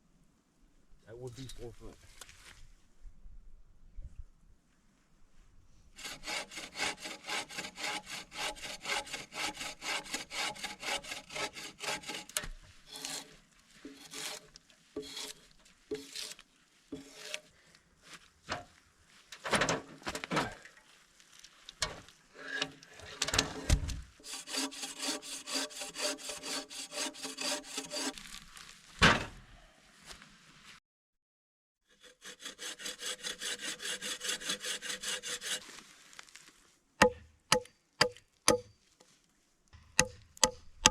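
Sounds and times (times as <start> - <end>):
hand saw cutting wood: 6.0 - 17.5, 22.4 - 28.2, 31.9 - 35.8.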